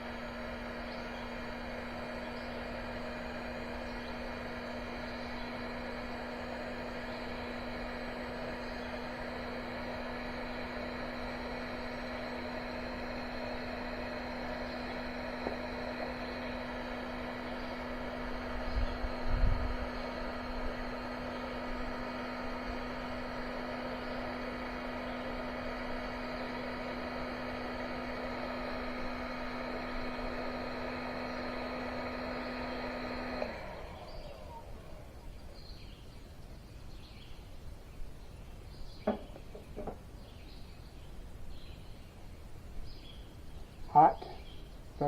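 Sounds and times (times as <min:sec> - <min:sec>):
heat gun humming whine: 0:00.0 - 0:45.0.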